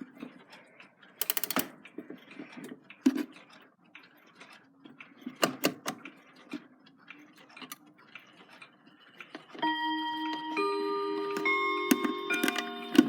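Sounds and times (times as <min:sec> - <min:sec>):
clock chime notes ringing: 0:09.6 - 0:13.0
clock ticking: 0:09.6 - 0:13.0.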